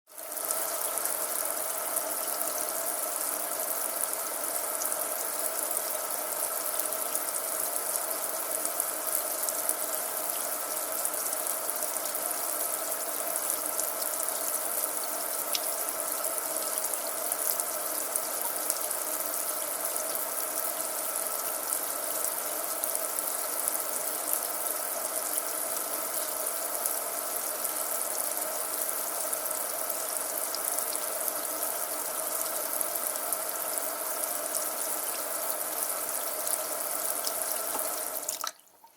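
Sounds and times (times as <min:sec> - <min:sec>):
tap running into a sink: 0:37.2 - 0:38.9.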